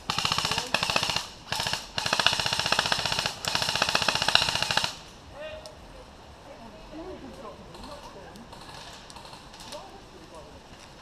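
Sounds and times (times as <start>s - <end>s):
airsoft rifle firing full auto: 0.1s - 5.0s.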